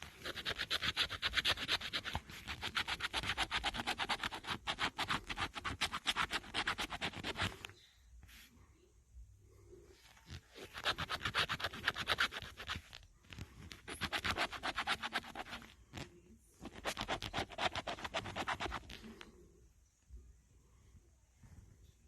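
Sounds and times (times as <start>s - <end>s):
scratch-off ticket being scratched: 0.0s - 7.6s, 10.5s - 13.0s, 13.7s - 19.0s.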